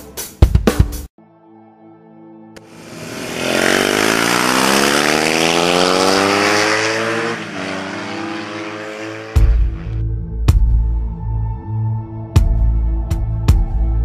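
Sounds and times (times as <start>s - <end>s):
music: 0.0s - 2.9s, 9.3s - 14.0s
motorcycle engine accelerating: 2.6s - 10.0s.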